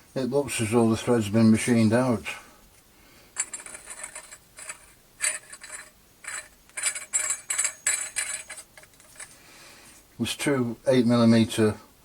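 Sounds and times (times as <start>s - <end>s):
metallic clinks and scrapes: 3.4s - 10.0s.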